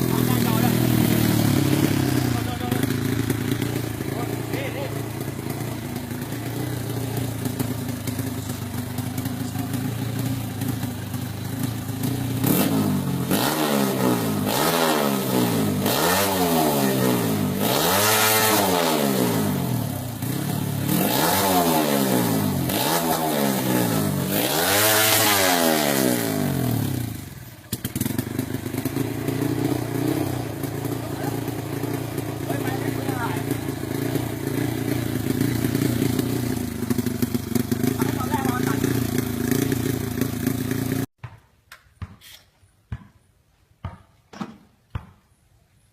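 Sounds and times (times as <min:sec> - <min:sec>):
motorcycle idling and revving: 0:00.0 - 0:41.4.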